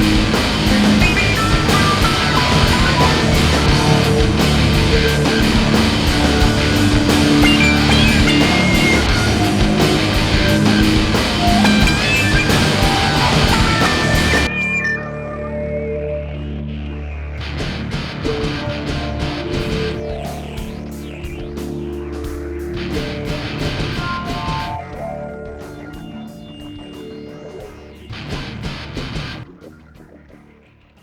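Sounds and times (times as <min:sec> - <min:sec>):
rock music with guitar and drums: 0:00.0 - 0:16.4, 0:17.3 - 0:29.5.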